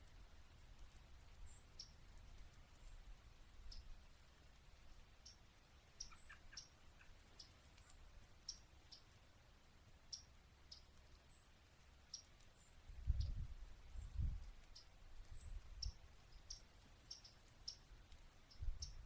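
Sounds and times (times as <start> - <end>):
wind rumble on microphone: 12.9 - 16.0, 18.5 - 19.0.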